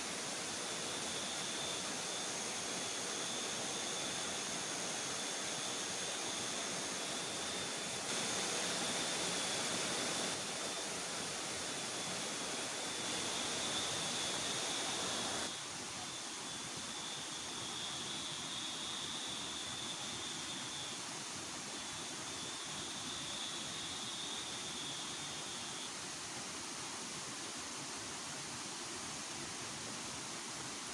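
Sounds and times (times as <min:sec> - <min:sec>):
thin high whine: 0:00.0 - 0:15.5
river water rushing: 0:00.0 - 0:15.6.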